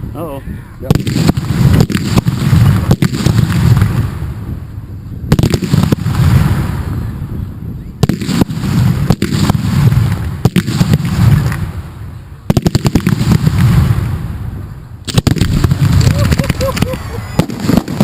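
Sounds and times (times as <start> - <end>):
fireworks cracking: 0.8 - 4.7, 5.3 - 7.2, 8.0 - 18.0
rumbling booms: 12.6 - 18.0.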